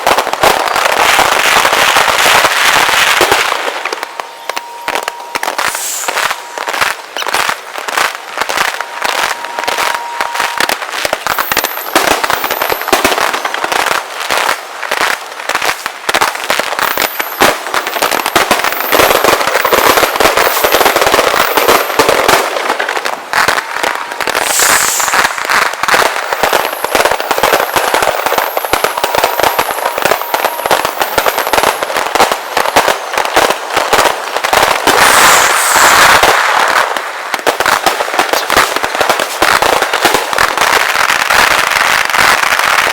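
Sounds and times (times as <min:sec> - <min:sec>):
falling whistles of fireworks: 0:00.0 - 0:42.9
fireworks bangs and crackling: 0:00.0 - 0:42.9.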